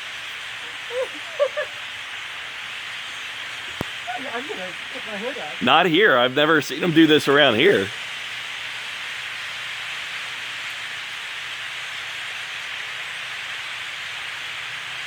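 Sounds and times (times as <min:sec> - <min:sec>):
flock of grackles calling: 0:00.0 - 0:08.0.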